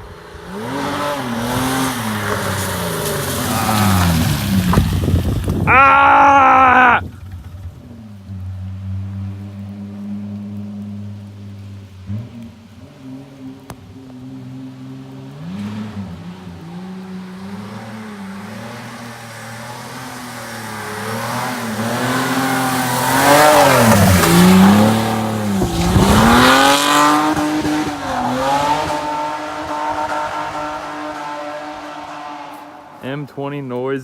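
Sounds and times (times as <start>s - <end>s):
tyre noise on wet road: 0.0s - 34.0s
car engine revving hard: 0.3s - 5.1s, 15.3s - 32.9s.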